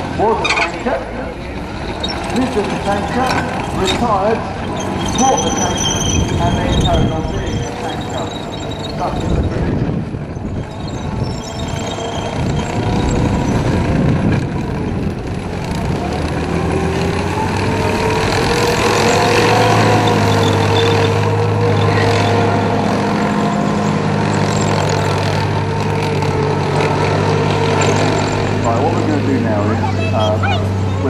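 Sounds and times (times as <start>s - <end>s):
tank engine running: 0.0s - 31.0s.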